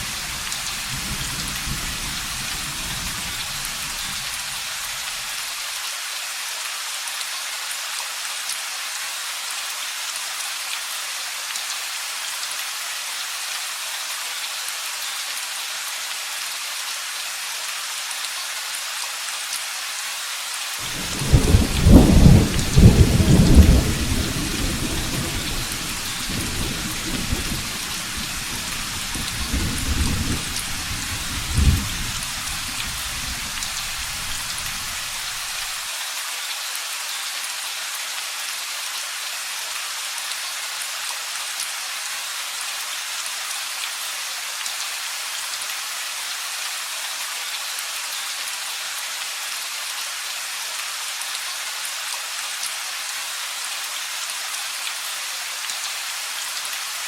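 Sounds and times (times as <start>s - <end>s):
heavy rain hissing: 0.0s - 5.8s, 20.6s - 36.0s
thunderclap rumbling: 20.8s - 35.6s.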